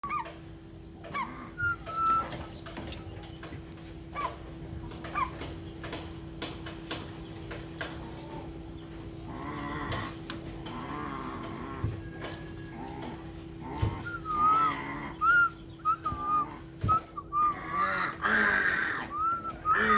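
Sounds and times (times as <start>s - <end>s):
mynah bird whistling: 1.2s - 3.0s, 13.9s - 19.9s.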